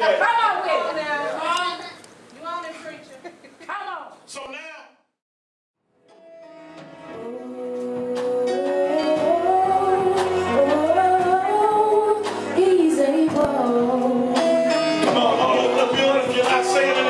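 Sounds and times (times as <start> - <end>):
held instrumental chords: 5.9 - 17.0
person singing gospel: 7.2 - 17.0.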